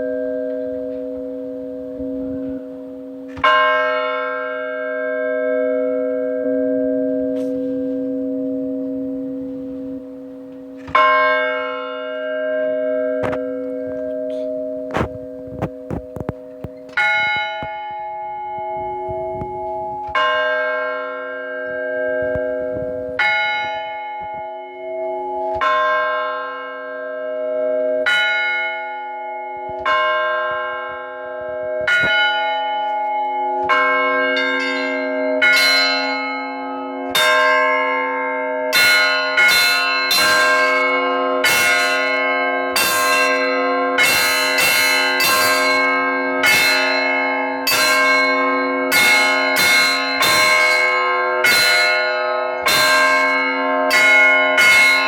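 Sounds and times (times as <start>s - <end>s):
large church bell strokes: 0.0s - 55.0s
lingering hum of bells: 0.0s - 55.0s
smaller bells pealing: 0.0s - 55.0s.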